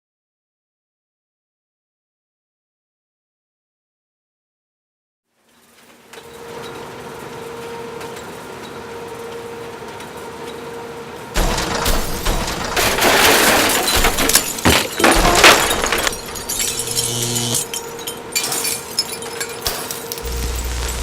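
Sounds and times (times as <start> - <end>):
crashes and clatter: 11.4 - 20.3
short low hum: 16.7 - 17.6, 20.2 - 21.0.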